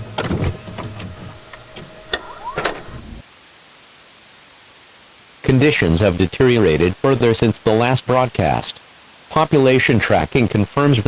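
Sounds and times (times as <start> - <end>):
steady even hiss: 3.0 - 11.0.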